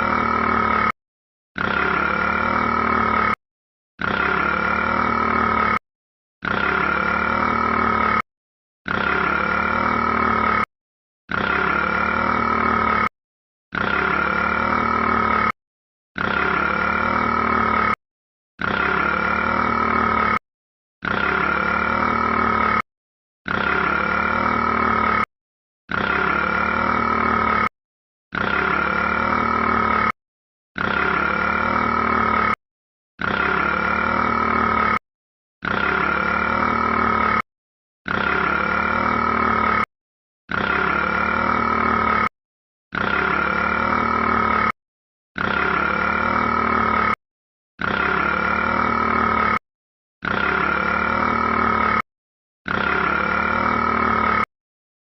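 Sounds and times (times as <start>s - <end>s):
long loud burp: 0.0s - 1.0s, 1.6s - 3.4s, 4.0s - 5.8s, 6.4s - 8.2s, 8.9s - 10.7s, 11.3s - 13.1s, 13.7s - 15.6s, 16.2s - 18.0s, 18.6s - 20.4s, 21.0s - 22.8s, 23.5s - 25.3s, 25.9s - 27.7s, 28.3s - 30.2s, 30.8s - 32.6s, 33.2s - 35.0s, 35.6s - 37.5s, 38.1s - 39.9s, 40.5s - 42.3s, 42.9s - 44.8s, 45.4s - 47.2s, 47.8s - 49.6s, 50.2s - 52.0s, 52.7s - 54.5s.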